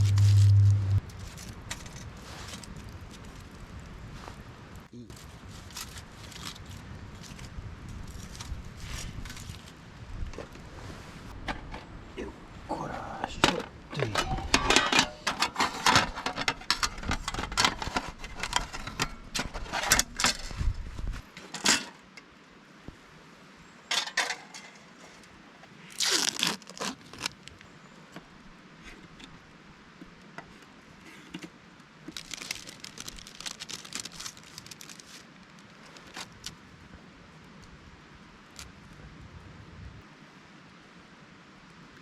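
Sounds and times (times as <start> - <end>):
crinkling and tearing: 0.0 - 3.7, 5.1 - 9.8, 25.9 - 27.7, 32.1 - 36.6
scattered crackles and rustles: 0.0 - 12.0, 13.1 - 23.0, 23.9 - 37.8, 38.4 - 39.1.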